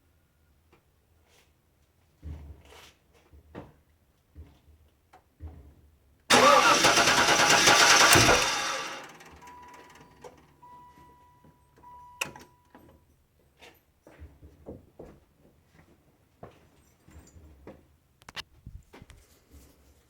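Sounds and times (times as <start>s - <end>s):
car engine cranking on starter: 6.3s - 10.6s
faint steady high tone: 9.3s - 13.1s.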